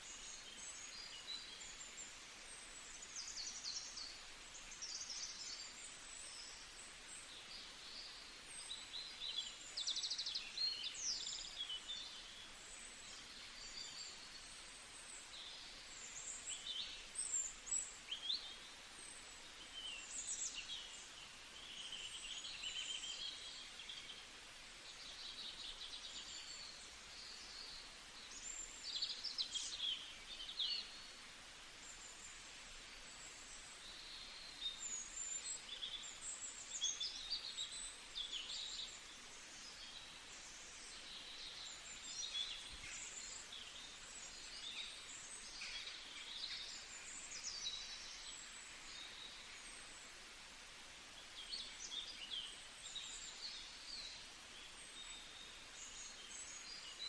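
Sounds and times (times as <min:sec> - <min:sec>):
faint hiss: 0:00.0 - 0:57.0
songbirds chirping and singing: 0:32.0 - 0:49.9.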